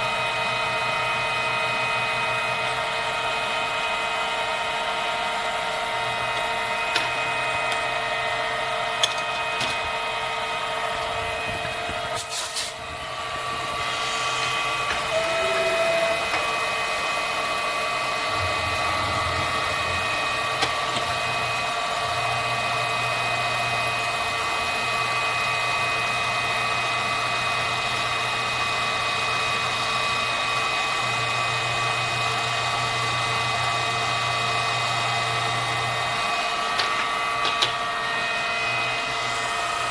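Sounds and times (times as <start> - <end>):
milling machine whine: 0.1 - 39.9
low hum: 18.1 - 21.6.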